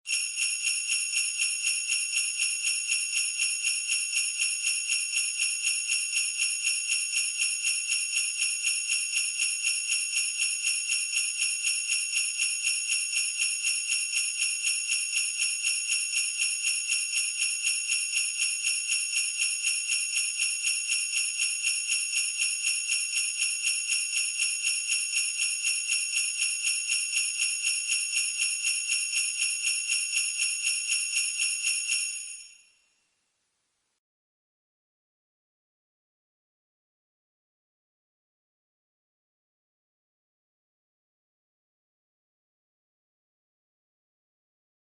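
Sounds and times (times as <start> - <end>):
sleigh bells shaken: 0.1 - 32.6.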